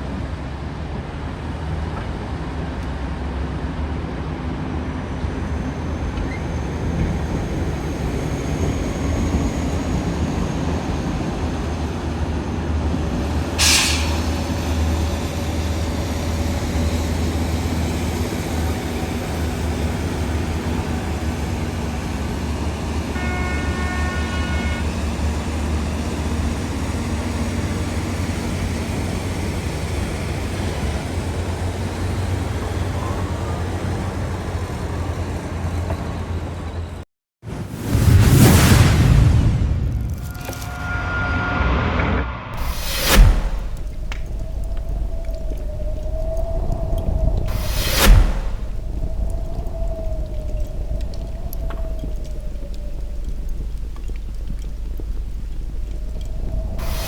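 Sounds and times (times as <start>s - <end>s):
short sharp hiss: 13.6s - 14.5s, 42.6s - 57.0s.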